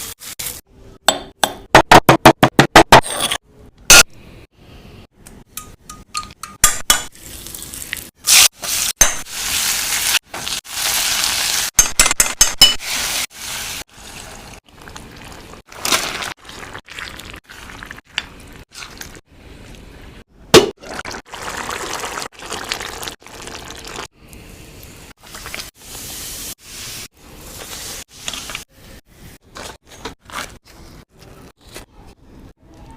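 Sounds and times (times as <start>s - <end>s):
oil sizzling: 7.2s - 11.8s, 12.6s - 19.2s, 20.8s - 24.1s, 24.8s - 28.7s.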